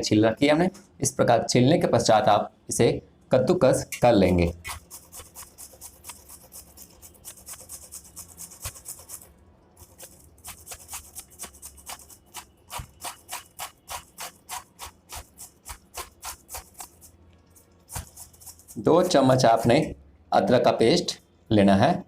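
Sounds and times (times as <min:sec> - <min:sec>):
ginger rasping on hand grater: 0:04.4 - 0:17.2, 0:17.8 - 0:19.4.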